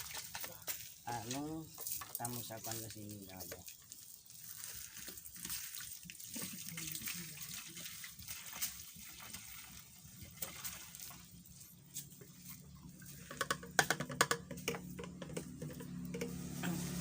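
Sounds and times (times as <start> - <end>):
liquid pouring into tank: 0.0 - 17.0
container clicks and knocks: 13.2 - 16.4.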